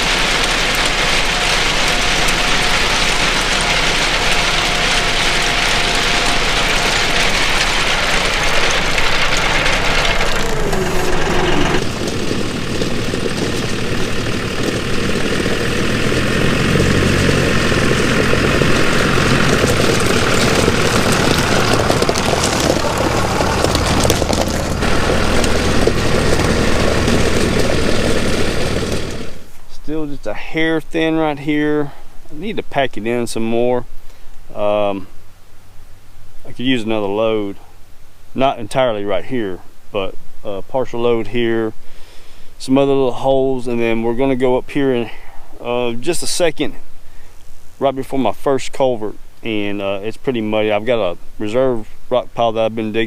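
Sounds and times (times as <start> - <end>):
diesel tractor engine running: 0.0 - 29.6.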